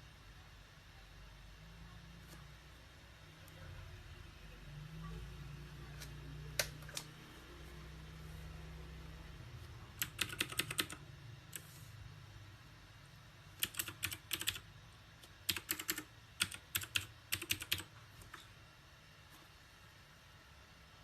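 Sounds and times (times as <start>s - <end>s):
mechanical keyboard typing: 9.9s - 11.8s, 13.6s - 18.5s.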